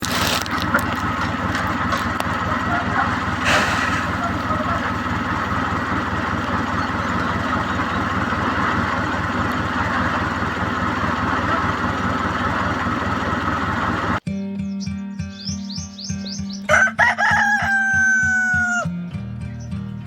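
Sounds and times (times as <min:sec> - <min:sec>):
tractor engine idling: 0:00.0 - 0:14.2.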